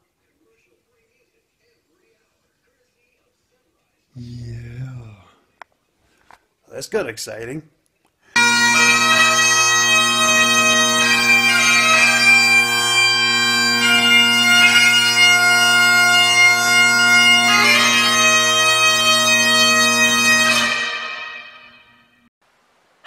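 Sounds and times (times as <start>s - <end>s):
bagpipe music: 8.4s - 22.1s.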